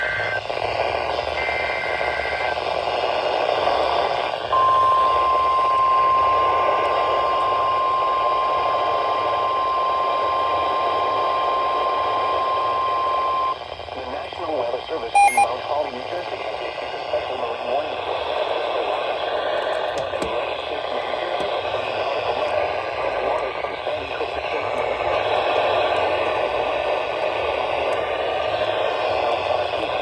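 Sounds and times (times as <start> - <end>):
high warning alarm tone: 0.0 - 0.5, 1.2 - 2.6, 4.5 - 13.6, 15.2 - 15.5
radio static hiss: 0.0 - 19.4, 20.7 - 27.0.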